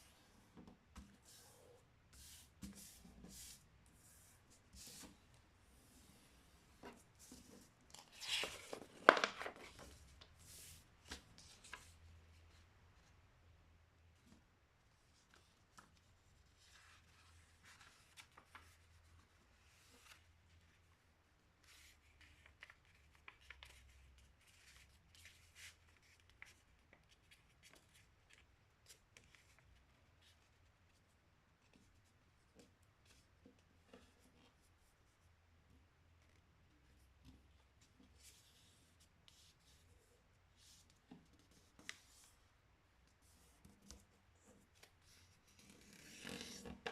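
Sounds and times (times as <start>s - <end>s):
paper being folded and creased: 7.2s - 12.0s, 15.0s - 20.7s, 21.6s - 31.0s, 44.7s - 46.9s.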